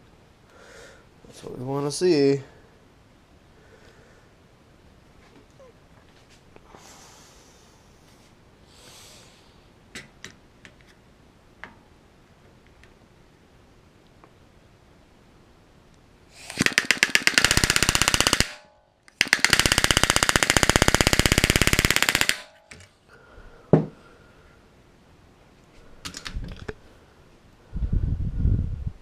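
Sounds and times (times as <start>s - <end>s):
pneumatic rivet gun hammering: 16.4s - 22.8s.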